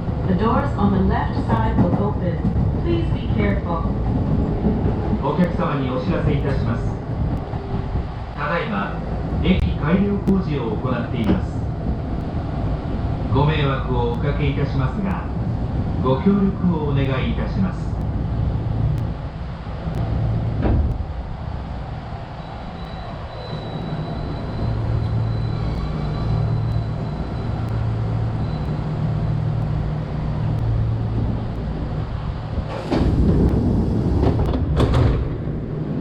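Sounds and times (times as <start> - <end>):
train rumble: 0.0 - 36.0
sliding doors opening: 32.5 - 36.0.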